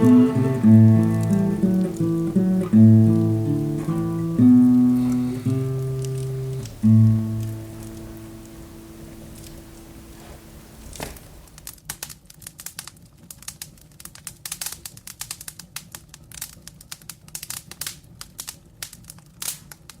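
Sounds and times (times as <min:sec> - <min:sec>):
guitar note: 0:00.0 - 0:10.8
fireplace fire crackling: 0:00.0 - 0:20.0.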